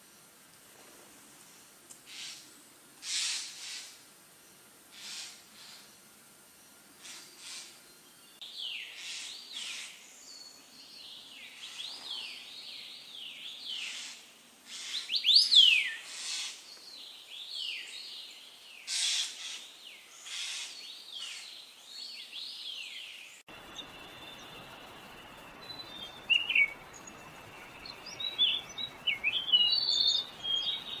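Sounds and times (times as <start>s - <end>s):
background hiss: 0.0s - 31.0s
small birds chirping: 7.0s - 31.0s.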